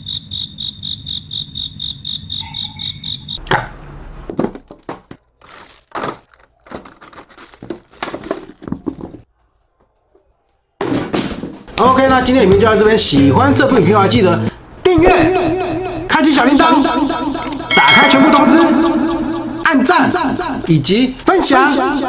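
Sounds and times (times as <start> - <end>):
rapid high electronic beeping: 15.0 - 20.8.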